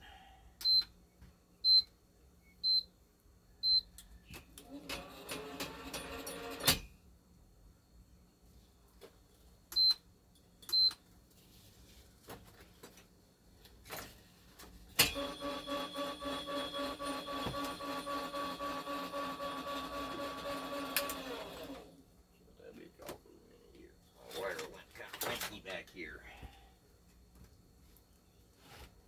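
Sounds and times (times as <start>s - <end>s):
electric motor running: 15.3s - 21.9s.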